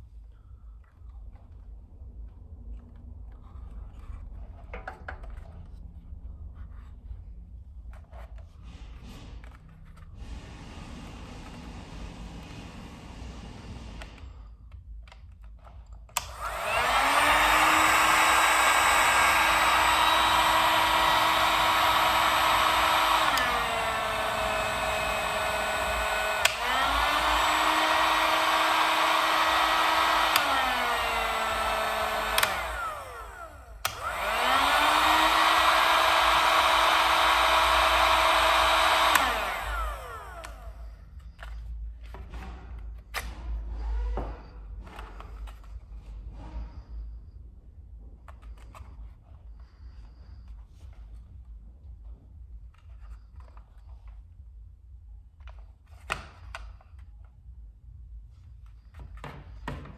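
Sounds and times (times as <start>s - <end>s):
heat gun fan motor: 16.1s - 41.6s.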